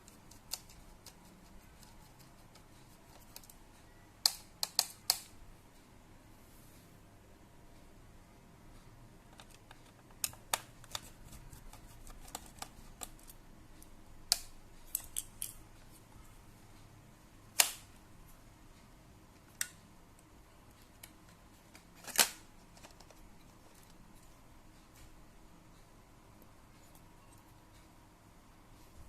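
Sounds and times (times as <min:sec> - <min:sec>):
laptop parts clicking and knocking: 0:00.0 - 0:03.6, 0:04.2 - 0:05.4, 0:09.2 - 0:15.7, 0:20.8 - 0:24.3.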